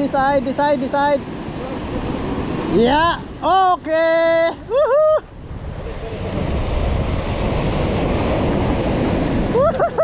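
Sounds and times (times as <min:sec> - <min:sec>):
sea surf washing in: 0:00.0 - 0:10.0
person calling out: 0:02.8 - 0:05.2
wind buffeting microphone: 0:04.4 - 0:10.0.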